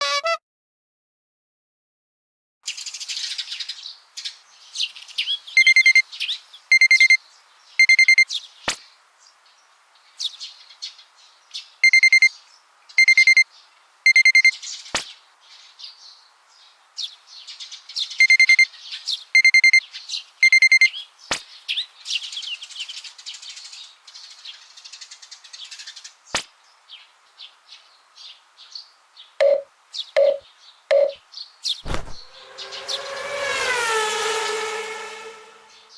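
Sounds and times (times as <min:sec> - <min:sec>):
alarm clock beeping: 0:05.6 - 0:06.0, 0:06.7 - 0:07.2, 0:07.8 - 0:08.2, 0:11.8 - 0:12.3, 0:13.0 - 0:13.4, 0:14.1 - 0:14.5, 0:18.2 - 0:18.7, 0:19.4 - 0:19.8, 0:20.4 - 0:20.9, 0:29.4 - 0:31.2
birds chirping: 0:14.6 - 0:35.9.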